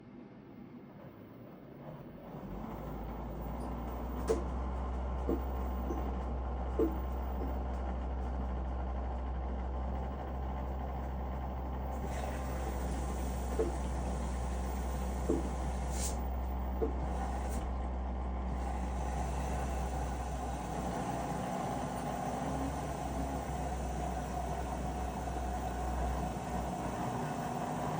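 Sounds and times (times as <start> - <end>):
washing machine rumbling: 1.5 - 27.9
dull clunk from washer: 4.2 - 4.5, 6.8 - 7.5, 15.2 - 15.6.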